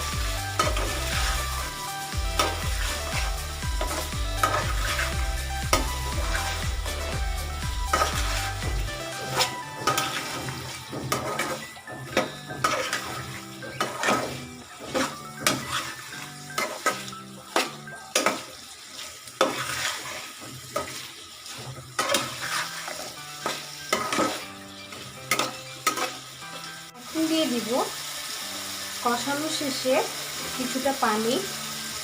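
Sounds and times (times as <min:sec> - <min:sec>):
meat and potatoes sizzling in oil: 0:00.0 - 0:32.0
utensil scraping against pan: 0:02.4 - 0:06.6, 0:07.8 - 0:08.6, 0:12.6 - 0:17.0, 0:19.4 - 0:26.2.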